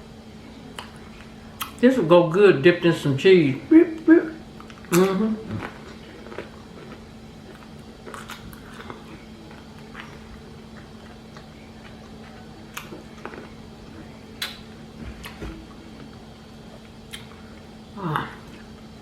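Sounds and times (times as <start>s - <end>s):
steady low hum: 0.0s - 19.0s
chewing and wet mouth noises: 4.0s - 18.9s.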